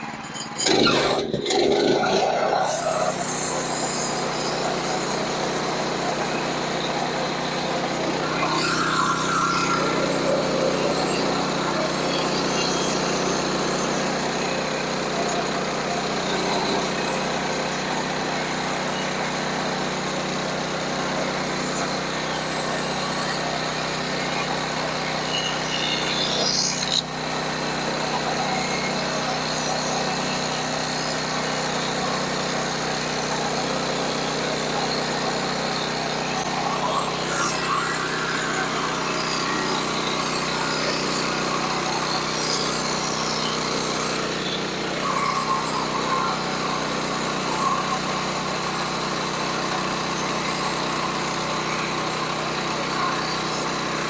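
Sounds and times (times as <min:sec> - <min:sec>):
rising whine: 0:00.0 - 0:54.0
sawmill engine hum: 0:00.0 - 0:54.0
sharp click: 0:26.7 - 0:27.1.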